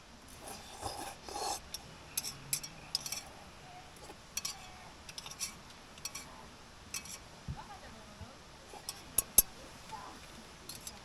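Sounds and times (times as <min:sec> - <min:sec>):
utensils scraping a metal pot: 0:00.3 - 0:03.4, 0:04.0 - 0:07.3, 0:08.7 - 0:09.6, 0:10.7 - 0:11.0.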